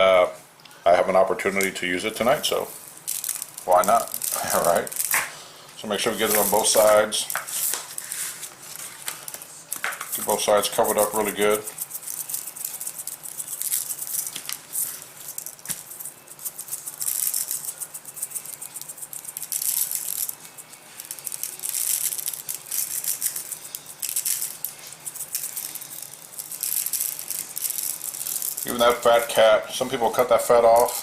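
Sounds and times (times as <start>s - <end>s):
seasoning rattling in shaker: 2.4s - 5.2s, 6.1s - 8.3s, 9.8s - 29.5s.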